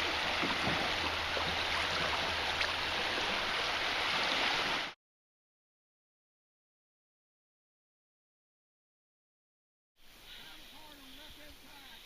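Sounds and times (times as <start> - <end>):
creek water running: 0.0 - 5.0, 10.0 - 12.0.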